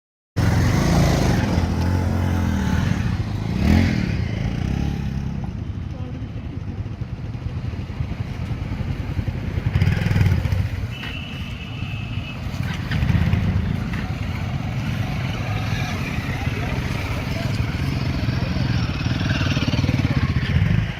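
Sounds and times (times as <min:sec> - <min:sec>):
motorcycle engine revving: 0:00.4 - 0:05.7, 0:08.6 - 0:10.9, 0:12.6 - 0:20.9.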